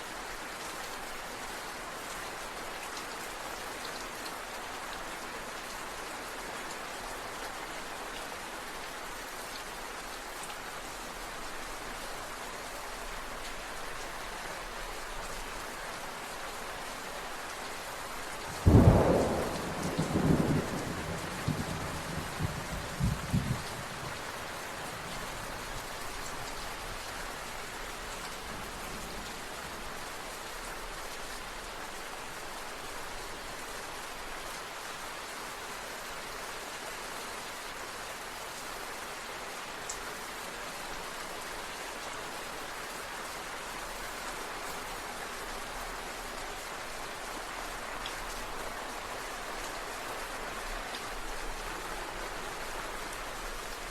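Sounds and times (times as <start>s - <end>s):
steady rain falling: 0.0s - 53.9s
thunder rumbling: 18.5s - 25.1s.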